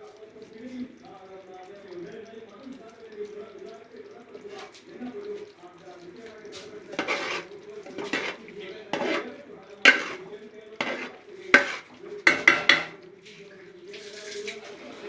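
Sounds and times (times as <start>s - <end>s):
spoon clinking and scraping pot: 4.4s - 5.5s, 6.2s - 13.0s.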